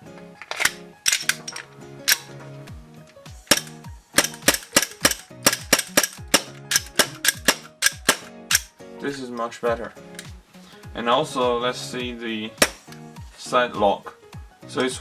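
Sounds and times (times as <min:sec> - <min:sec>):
background music: 0:00.0 - 0:15.0
pistol shots cracking: 0:03.4 - 0:08.7, 0:12.6 - 0:12.9.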